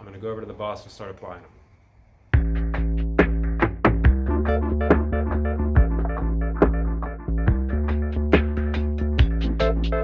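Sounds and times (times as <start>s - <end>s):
electronic music with steady beat: 2.4s - 10.0s.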